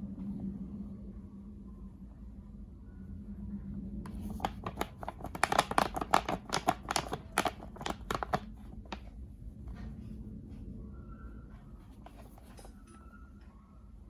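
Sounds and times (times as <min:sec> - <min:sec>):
packaging crackling and clicking: 0:04.1 - 0:09.1.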